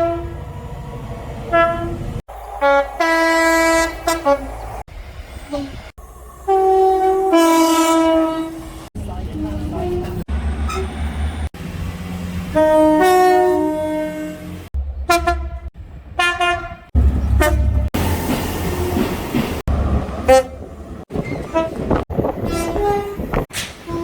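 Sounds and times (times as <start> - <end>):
train horn blasts: 0.0 - 0.4, 1.5 - 4.6, 6.5 - 10.9, 12.5 - 17.9, 20.3 - 20.6, 21.5 - 24.0
train engine and rail rumble: 0.0 - 24.0.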